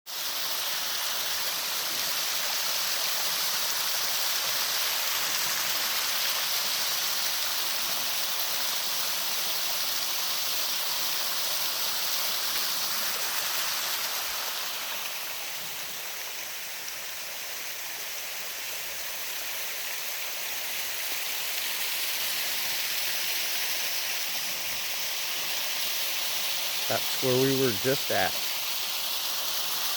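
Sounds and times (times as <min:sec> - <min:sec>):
waterfall rushing: 0:26.5 - 0:28.7.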